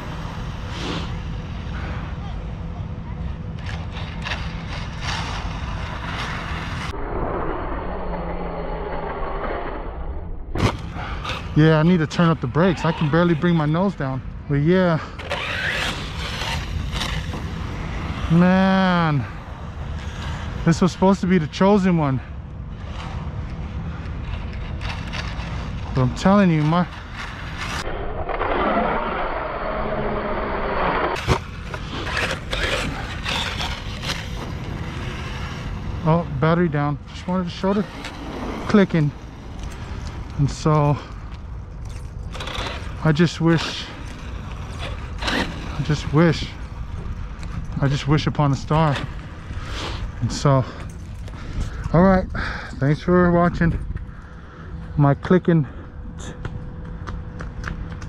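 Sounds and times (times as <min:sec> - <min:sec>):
low hum: 0:00.0 - 0:58.0
tyres scraping on dirt: 0:10.6 - 0:19.3, 0:24.1 - 0:51.3
rc truck electric motor running: 0:15.2 - 0:17.3
rc truck motor whirring: 0:15.2 - 0:17.4, 0:29.1 - 0:34.4.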